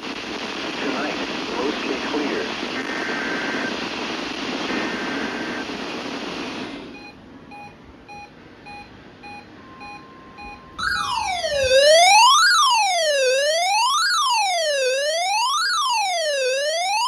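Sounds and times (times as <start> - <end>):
short electronic beeps: 6.9 - 11.3
wailing siren tone: 9.6 - 17.0.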